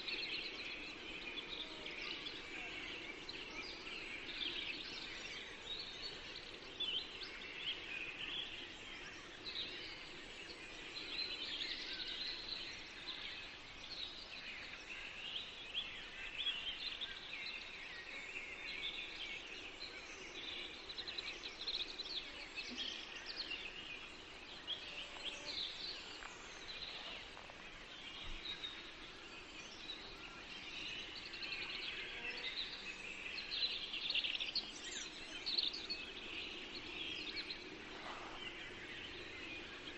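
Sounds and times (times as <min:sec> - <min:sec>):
low background noise: 0:00.0 - 0:39.9
small birds chirping: 0:00.0 - 0:39.9.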